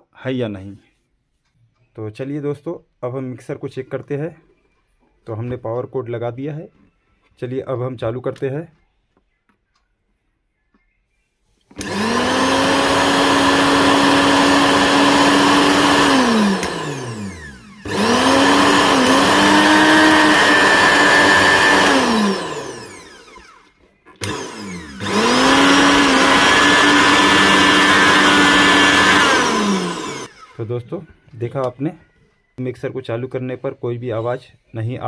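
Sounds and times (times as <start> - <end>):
mixer grinder motor humming: 11.7 - 30.7.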